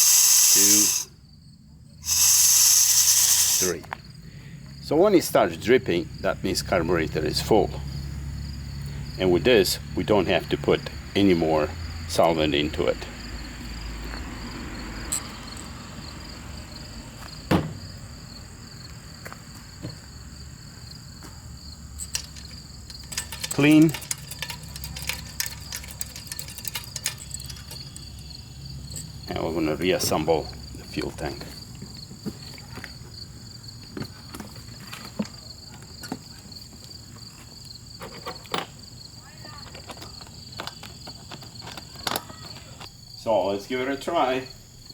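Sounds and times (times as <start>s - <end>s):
crickets chirring: 0.0s - 44.9s
tools and parts clicking: 22.0s - 29.2s, 39.6s - 42.9s.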